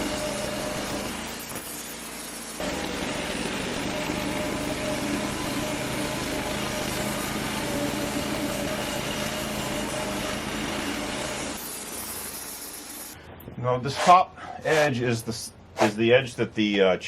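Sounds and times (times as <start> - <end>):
band sawmill engine drone: 0.0 - 1.5, 2.2 - 11.6.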